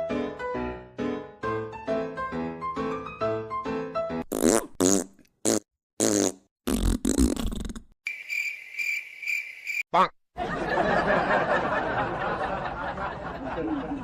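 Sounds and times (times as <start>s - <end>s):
wet fart noises: 4.2s - 8.0s
high pulsing chirping: 8.1s - 9.8s.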